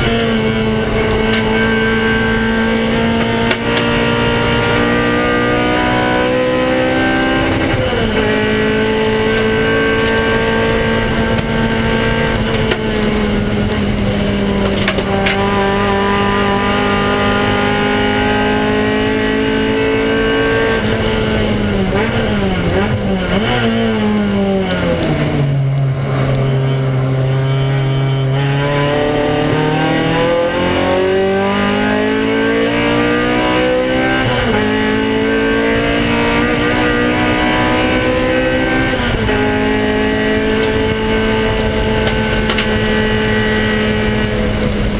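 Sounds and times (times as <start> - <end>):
race car engine revving: 0.0 - 44.9.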